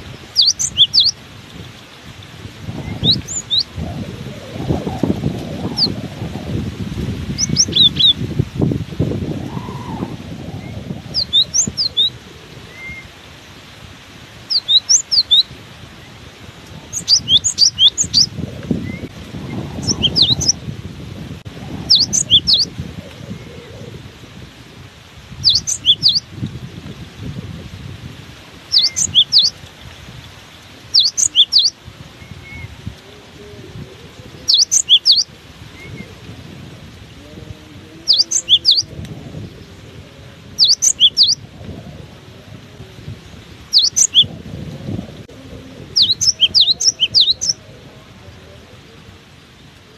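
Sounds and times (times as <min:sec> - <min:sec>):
wind buffeting microphone: 0:00.0 - 0:49.9
bird chirping: 0:00.2 - 0:01.2, 0:02.8 - 0:03.7, 0:05.8 - 0:06.0, 0:07.3 - 0:08.2, 0:11.1 - 0:12.1, 0:14.5 - 0:15.4, 0:16.9 - 0:18.3, 0:19.8 - 0:20.6, 0:21.9 - 0:22.7, 0:25.4 - 0:26.2, 0:28.7 - 0:29.5, 0:30.9 - 0:32.7, 0:34.5 - 0:36.0, 0:38.0 - 0:38.9, 0:40.6 - 0:41.4, 0:43.7 - 0:44.3, 0:46.0 - 0:47.6.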